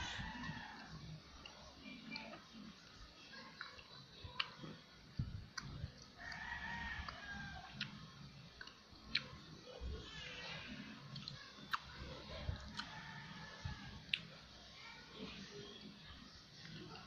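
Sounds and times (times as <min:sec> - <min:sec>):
chewing and mouth smacks: 0:00.4 - 0:09.5, 0:11.0 - 0:13.0, 0:14.0 - 0:14.4.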